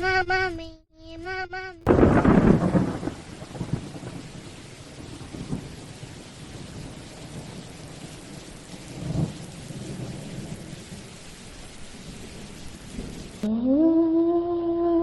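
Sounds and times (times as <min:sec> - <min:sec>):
thunder clap: 0:01.9 - 0:13.5
heavy rain: 0:01.9 - 0:13.6.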